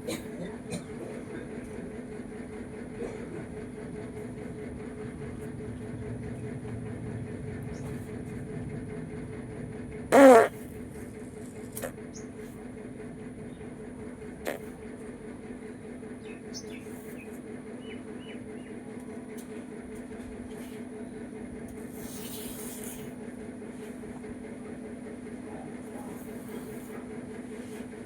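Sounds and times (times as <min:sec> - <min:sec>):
low background hum: 0:00.0 - 0:28.0
fart sound: 0:10.1 - 0:10.6.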